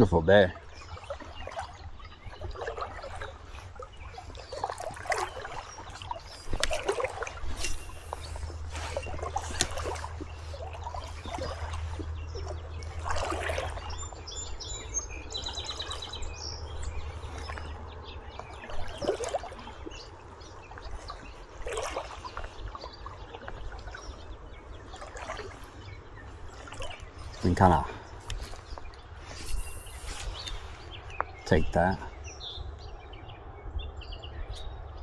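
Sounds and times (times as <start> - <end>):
water splashing from wading: 0.0 - 31.0
water trickling: 0.0 - 31.2
bird trilling: 7.6 - 10.4, 29.4 - 30.7.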